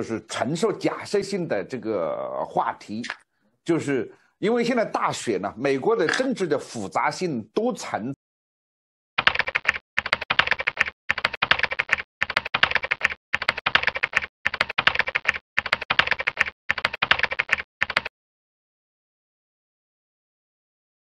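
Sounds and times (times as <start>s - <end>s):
rapid keyboard typing: 9.2s - 18.1s.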